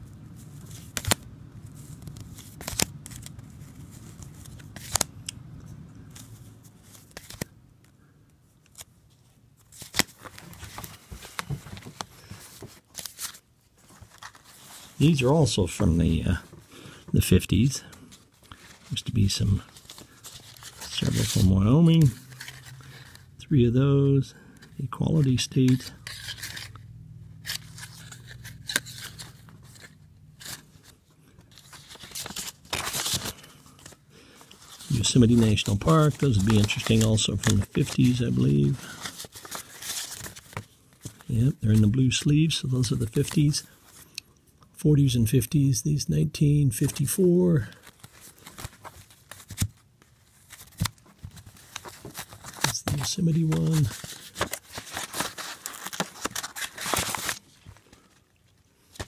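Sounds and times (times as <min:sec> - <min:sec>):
paper rustling: 0:01.8 - 0:05.1, 0:08.7 - 0:15.4, 0:17.6 - 0:23.2, 0:25.1 - 0:26.8, 0:27.4 - 0:44.1, 0:47.6 - 0:59.0.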